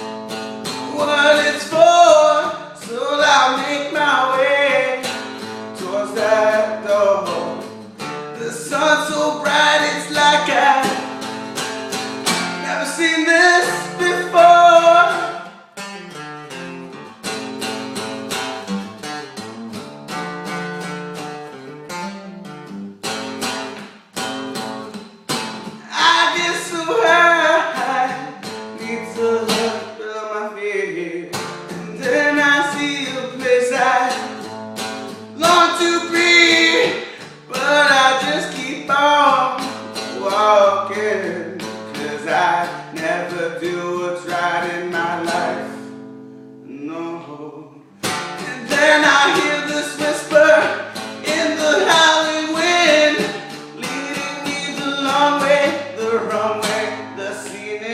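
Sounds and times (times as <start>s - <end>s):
strummed acoustic guitar: 0.0s - 57.9s
person singing: 0.8s - 5.2s, 5.8s - 11.1s, 12.6s - 15.5s, 25.7s - 34.5s, 35.3s - 45.9s, 46.6s - 57.9s.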